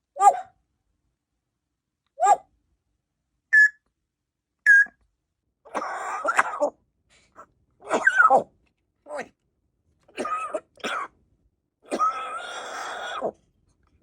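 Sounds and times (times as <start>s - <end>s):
parrot chirps: 3.5s - 3.8s, 4.7s - 5.0s
parrot coughing: 5.7s - 6.8s, 7.8s - 8.5s, 10.1s - 11.2s, 11.8s - 13.4s.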